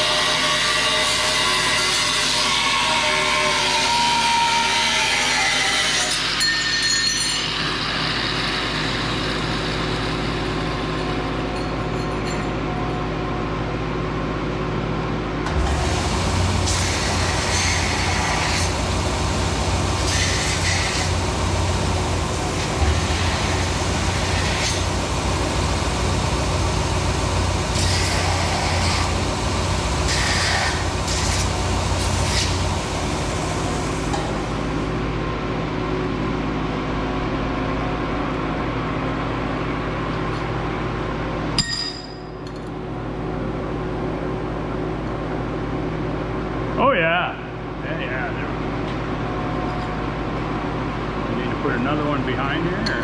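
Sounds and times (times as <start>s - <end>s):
shop fan hum: 0.0s - 53.0s
welding machine humming: 7.6s - 11.7s, 15.5s - 35.0s
welding hiss bursts: 15.6s - 34.7s.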